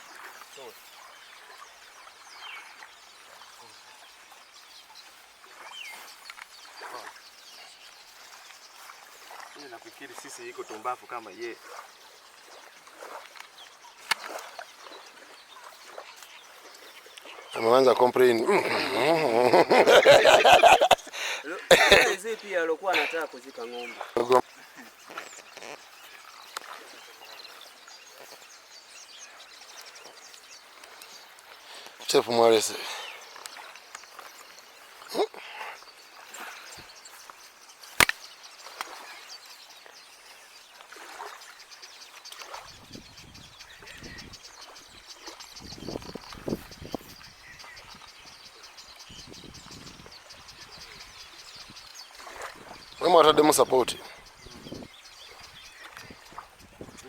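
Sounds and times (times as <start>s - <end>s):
bird chirps: 0.0s - 57.0s
steady outdoor hiss: 0.0s - 57.0s.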